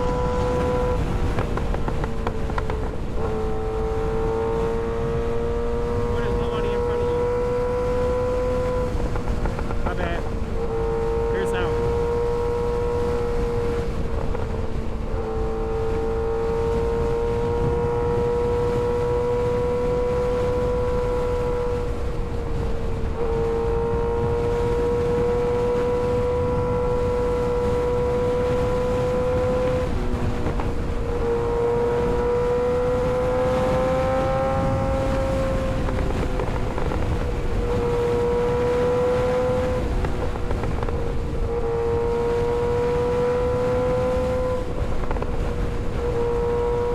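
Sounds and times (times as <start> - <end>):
motorcycle engine running: 0.0 - 46.9.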